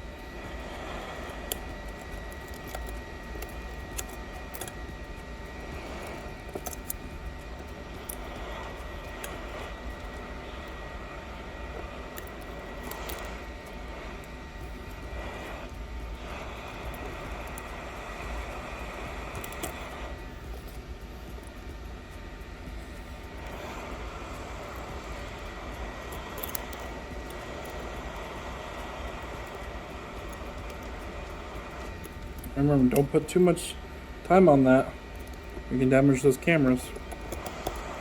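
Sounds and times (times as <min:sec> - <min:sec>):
small electric blower whining: 0:00.0 - 0:38.0
tools clicking and tapping: 0:00.6 - 0:10.8, 0:19.3 - 0:22.2, 0:22.8 - 0:33.5, 0:35.1 - 0:35.6, 0:36.9 - 0:38.0.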